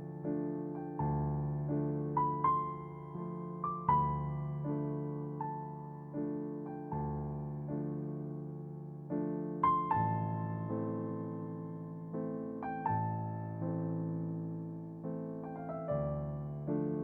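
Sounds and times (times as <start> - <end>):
gentle electric piano music: 0.0 - 17.0.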